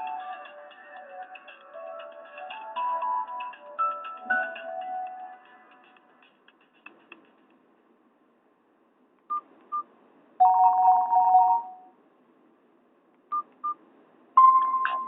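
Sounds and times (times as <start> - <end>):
loud phone tone: 10.4 - 11.9.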